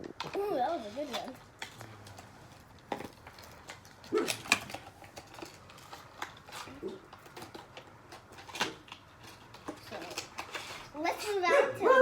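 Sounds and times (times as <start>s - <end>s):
dog barking: 11.5s - 12.0s.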